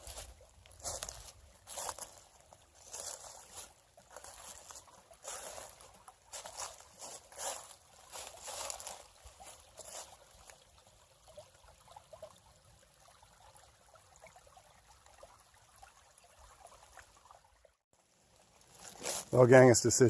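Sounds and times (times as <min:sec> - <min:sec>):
soft ticks and rustles: 0:00.0 - 0:10.7, 0:18.2 - 0:19.7
small creek trickling: 0:00.0 - 0:20.0.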